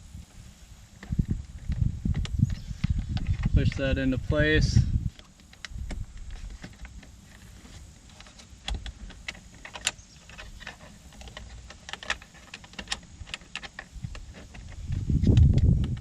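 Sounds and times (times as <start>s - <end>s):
plastic parts clicking and tapping: 8.1s - 16.0s.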